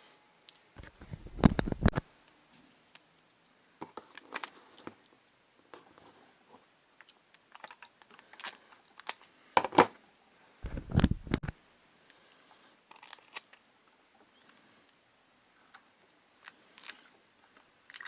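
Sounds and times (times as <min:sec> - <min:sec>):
small clicks and handling noises: 0:00.4 - 0:09.8, 0:10.6 - 0:18.0.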